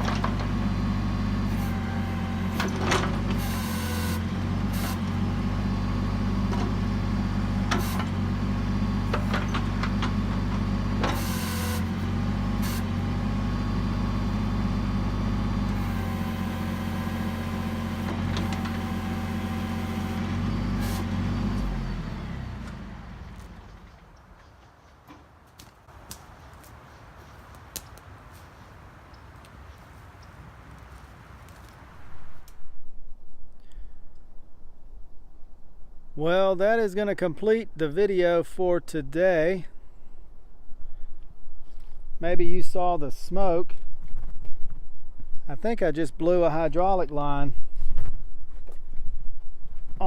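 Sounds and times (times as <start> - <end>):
diesel engine running: 0.0 - 25.2.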